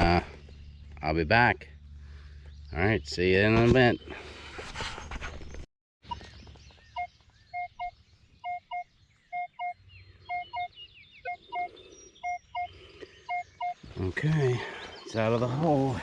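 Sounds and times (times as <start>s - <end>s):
metal detector beeps: 7.0s - 12.7s, 13.3s - 13.9s.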